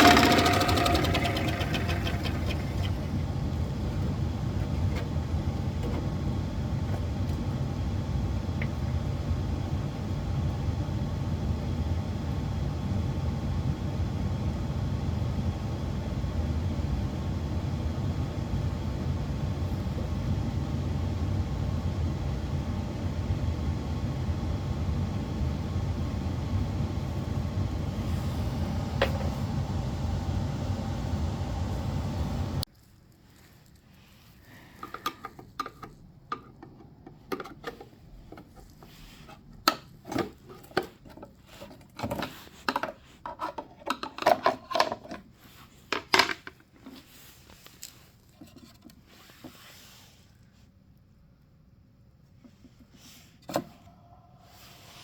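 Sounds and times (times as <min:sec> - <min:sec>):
furnace running: 0:00.0 - 0:32.7.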